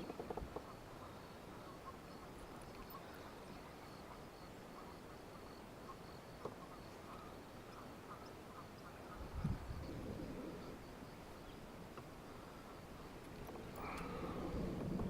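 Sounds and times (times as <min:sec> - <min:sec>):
faint duck-like bird calls: 0:00.6 - 0:11.5.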